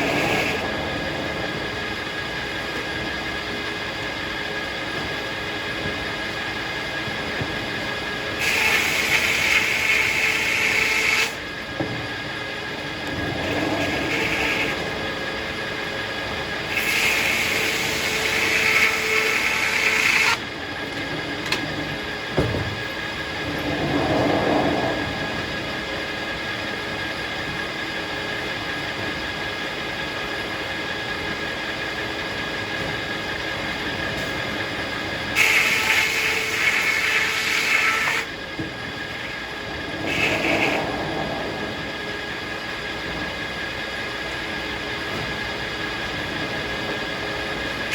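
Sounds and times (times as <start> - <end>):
circular saw whine: 0.0 - 47.9
saw blade cutting log: 8.4 - 11.4, 13.8 - 14.8, 16.7 - 20.4, 35.4 - 38.3.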